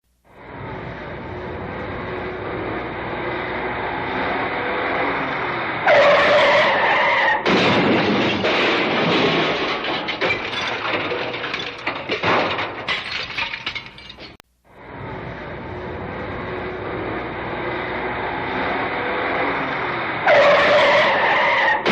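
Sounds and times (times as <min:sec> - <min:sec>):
loud car crash: 0:00.5 - 0:15.1, 0:18.2 - 0:21.9
tyre screech: 0:05.7 - 0:07.5, 0:20.2 - 0:21.9
clattering debris: 0:05.9 - 0:14.4.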